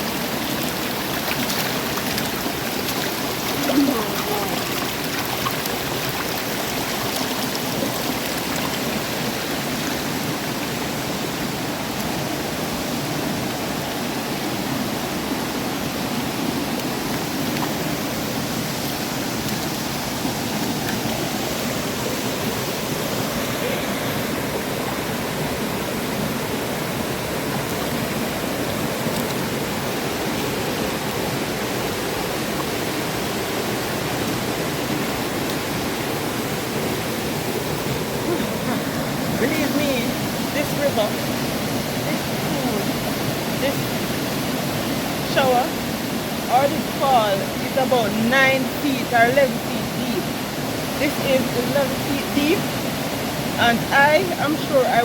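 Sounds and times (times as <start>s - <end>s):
waterfall rushing water: 0.0s - 55.0s.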